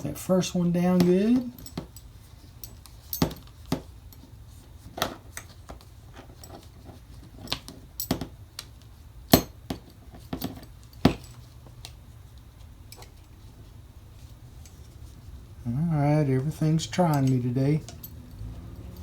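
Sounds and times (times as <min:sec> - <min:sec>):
metallic belt buckle clicks: 0:17.1 - 0:19.0.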